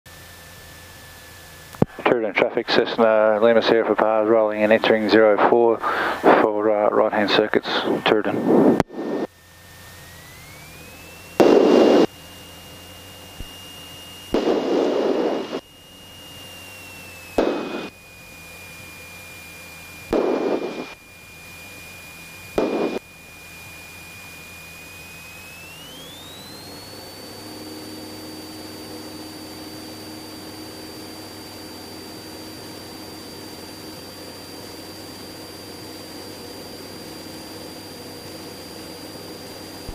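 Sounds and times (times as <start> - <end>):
aircraft engine high whine: 0.1 - 39.9
low hum: 0.1 - 39.9
loud bursts of noise: 11.3 - 12.2, 14.2 - 15.8, 17.2 - 18.0, 20.1 - 21.2, 22.6 - 23.2.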